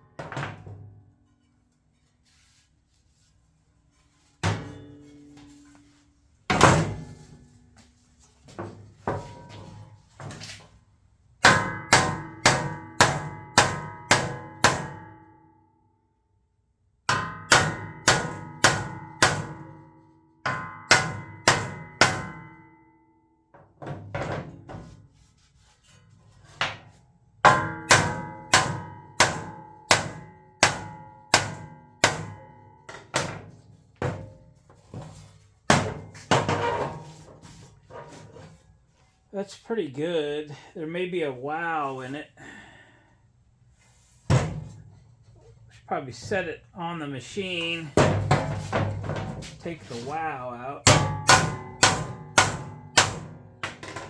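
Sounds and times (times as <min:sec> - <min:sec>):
hammer striking metal: 0:11.4 - 0:15.3, 0:17.1 - 0:19.8, 0:20.5 - 0:22.8, 0:27.4 - 0:33.4, 0:50.8 - 0:53.8.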